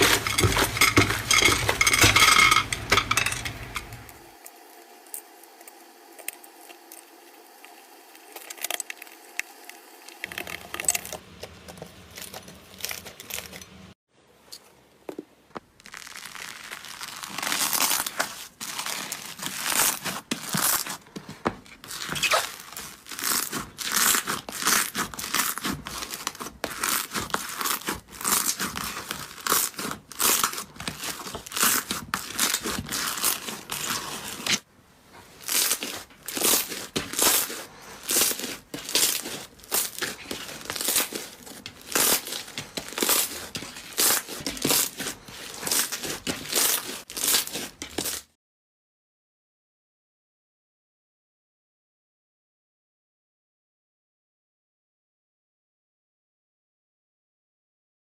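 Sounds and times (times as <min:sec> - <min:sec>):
slime being kneaded: 0:15.8 - 0:34.6, 0:35.2 - 0:48.3.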